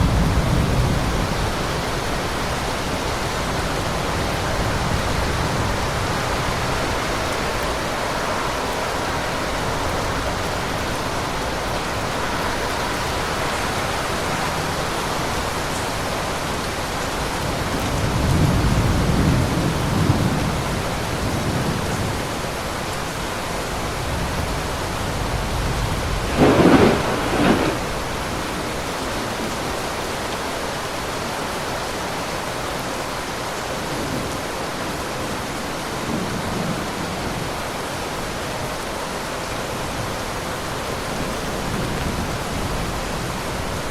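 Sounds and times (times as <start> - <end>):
heavy rain: 0.0 - 43.9
thunder rumble: 24.4 - 28.8
sharp thunder clap: 26.1 - 28.2.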